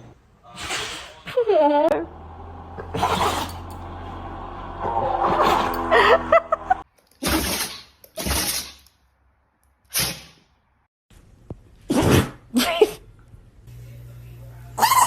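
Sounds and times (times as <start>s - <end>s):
dog sneezing: 2.9s - 3.6s.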